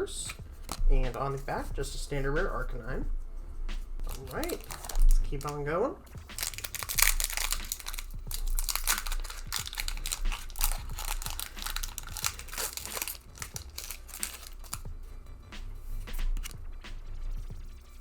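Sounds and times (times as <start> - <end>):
background music: 0.0 - 18.0
foil wrapper crinkling and tearing: 0.2 - 1.7, 4.0 - 5.6, 6.3 - 14.9.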